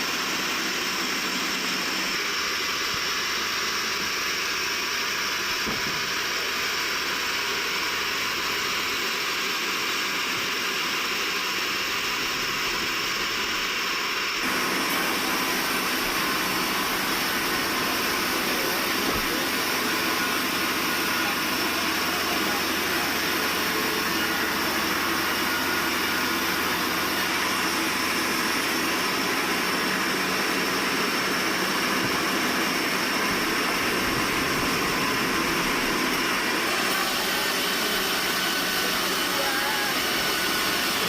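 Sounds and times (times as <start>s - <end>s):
high-pitched machine whine: 0.0s - 41.0s
sawmill machinery running: 0.0s - 41.0s.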